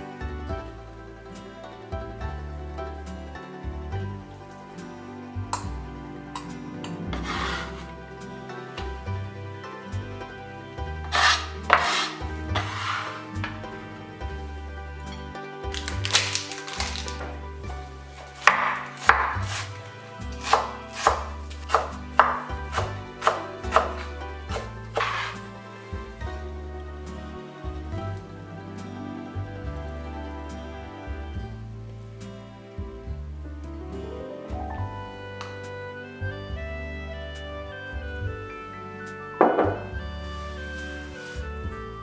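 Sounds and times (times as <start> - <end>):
background music with bass line: 0.0 - 42.0
knife chopping on cutting board: 7.1 - 7.9, 11.1 - 13.6, 18.4 - 25.5, 39.5 - 39.9.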